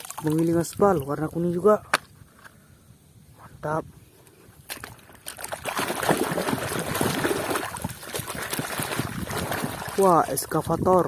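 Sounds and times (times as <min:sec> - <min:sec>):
water splashing and trickling: 0:00.0 - 0:01.8, 0:04.7 - 0:11.0.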